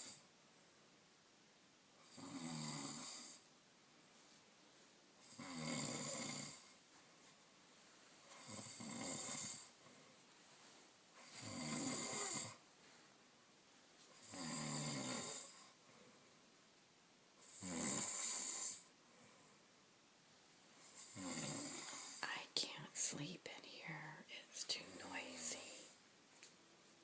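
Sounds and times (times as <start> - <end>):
quiet breaths: 0.0 - 1.0, 1.9 - 27.0
person snoring: 2.0 - 3.4, 5.2 - 6.8, 8.4 - 9.7, 11.2 - 12.6, 14.2 - 15.8, 17.4 - 18.9, 20.9 - 22.4.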